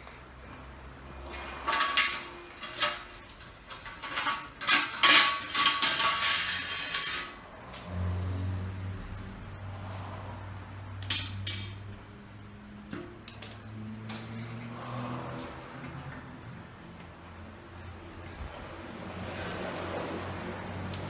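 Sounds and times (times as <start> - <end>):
metal milking machine parts clanking: 1.2 - 7.4.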